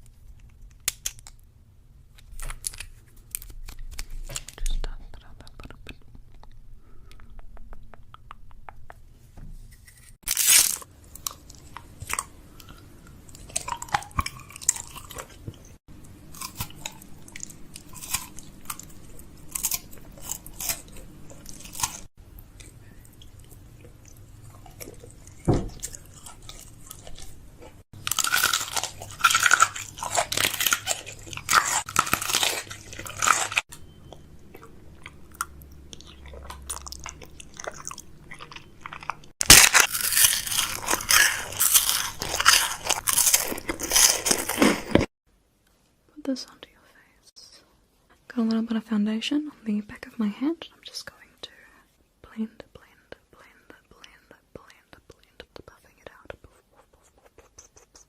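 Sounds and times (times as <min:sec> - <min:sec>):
crunching and crackling: 0:02.1 - 0:04.8, 0:09.8 - 0:33.8, 0:34.4 - 0:45.1.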